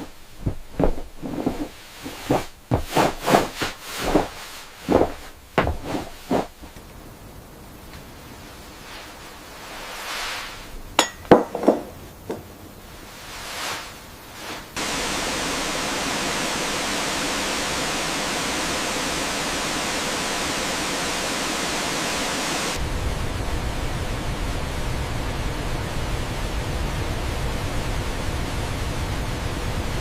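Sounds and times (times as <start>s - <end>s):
soft rustles: 0.0s - 7.1s, 7.8s - 10.8s, 11.6s - 14.8s
sharp knocks: 5.0s - 6.5s
rush of falling water: 14.8s - 22.9s.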